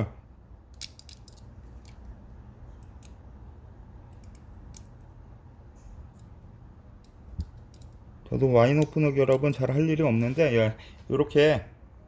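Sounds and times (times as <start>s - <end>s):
low steady hum: 0.0s - 12.0s
multitool metal parts clicking: 0.7s - 3.2s, 4.0s - 5.2s, 7.0s - 8.0s.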